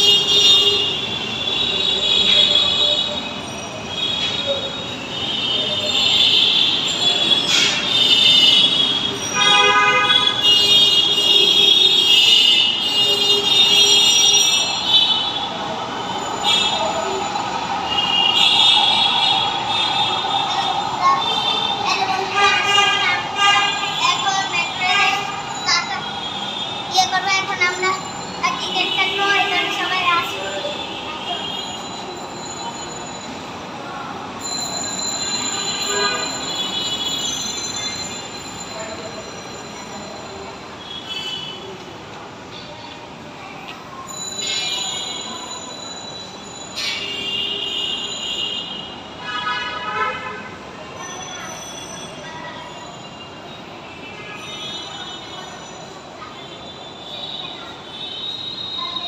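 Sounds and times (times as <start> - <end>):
train wheels squealing and hissing: 43.9 - 47.3, 50.9 - 53.6, 54.3 - 59.0.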